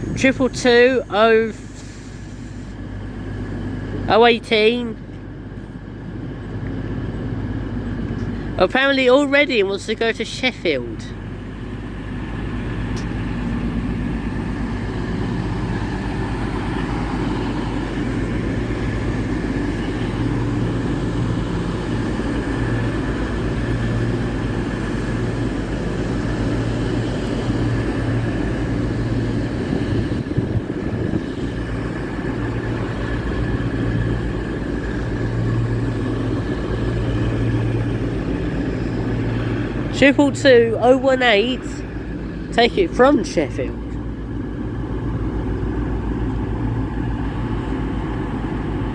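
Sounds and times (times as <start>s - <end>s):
steady high whine: 0.0s - 48.9s
train diesel engines idling: 0.0s - 48.9s
low hum: 11.0s - 48.9s.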